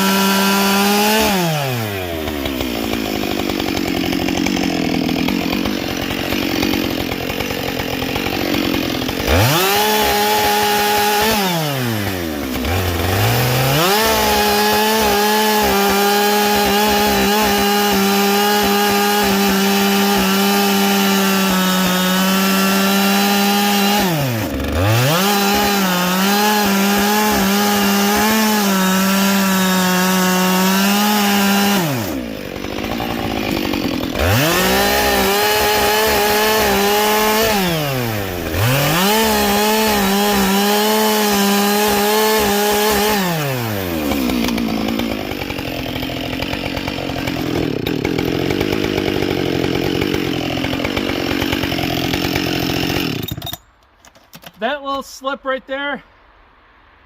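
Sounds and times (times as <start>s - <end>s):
chainsaw cutting wood: 0.0s - 54.8s.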